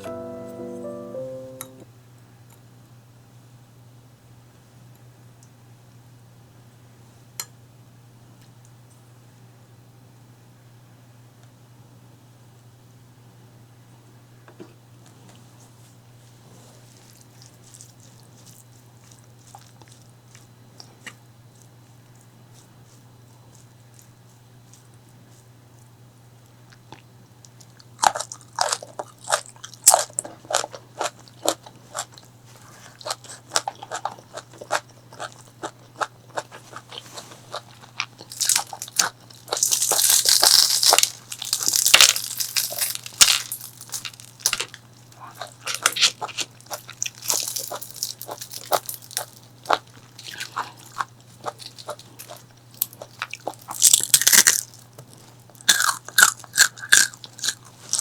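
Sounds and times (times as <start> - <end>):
faint low hum: 0.0 - 1.9
crunching and chewing fried food: 16.8 - 58.0.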